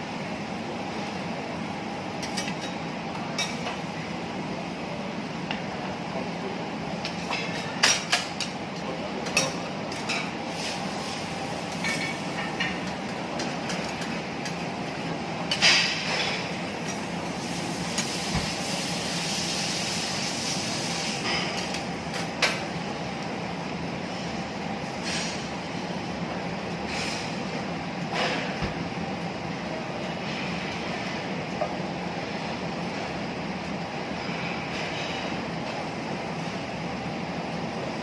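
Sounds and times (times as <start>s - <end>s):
griddle hissing: 10.1s - 12.6s, 15.5s - 22.3s, 24.1s - 25.5s, 26.8s - 27.5s.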